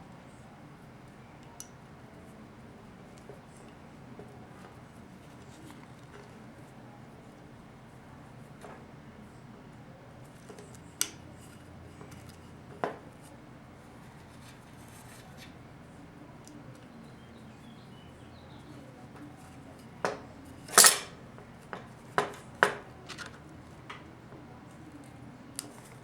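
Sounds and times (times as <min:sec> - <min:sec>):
metallic clicks and knocks: 0:20.7 - 0:21.2.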